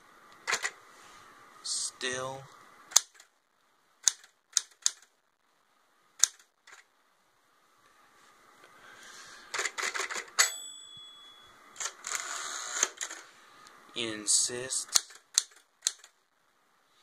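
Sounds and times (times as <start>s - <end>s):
typewriter bell ding: 10.4s - 11.6s.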